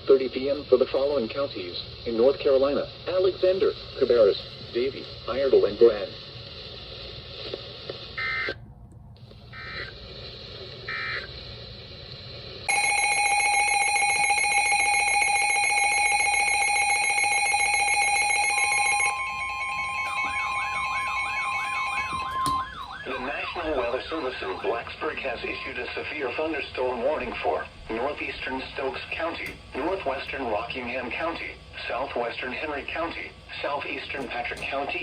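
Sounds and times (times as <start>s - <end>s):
short beeps: 12.7s - 22.4s
loud steady alert signal: 12.7s - 31.1s
steady tone: 12.7s - 31.5s
warbling siren-like tone: 14.9s - 25.8s.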